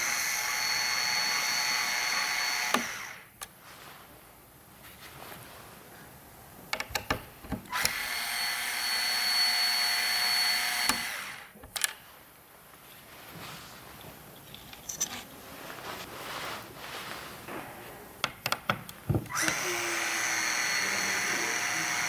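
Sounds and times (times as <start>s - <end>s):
electric screwdriver whirring: 0.0s - 3.2s, 7.7s - 11.5s, 19.3s - 22.0s
handling clicks and taps: 18.2s - 19.6s.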